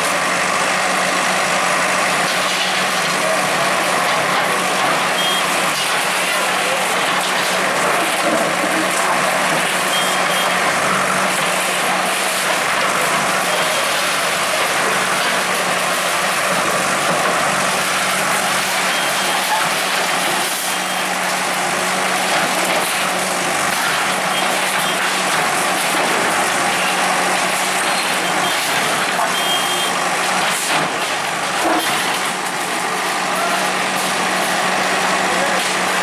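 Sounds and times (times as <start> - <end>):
bulldozer diesel engine: 0.0 - 36.0
street noise: 0.0 - 36.0
faint high beeps: 5.2 - 5.4.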